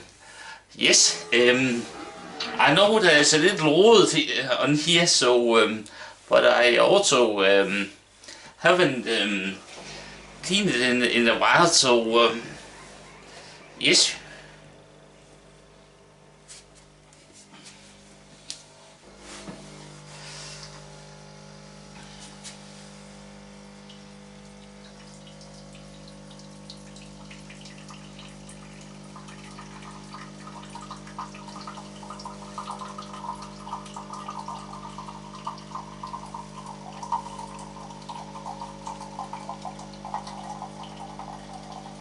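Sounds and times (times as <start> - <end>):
coffee machine humming: 0.0 - 4.6, 8.6 - 42.0
water gurgling: 0.8 - 4.3, 23.2 - 42.0.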